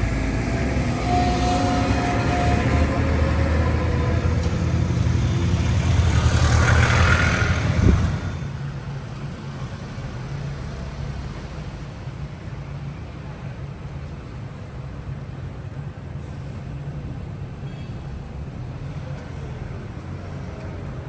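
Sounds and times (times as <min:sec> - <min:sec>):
vehicle engine hum: 0:00.0 - 0:11.4
road noise hiss: 0:00.0 - 0:20.4.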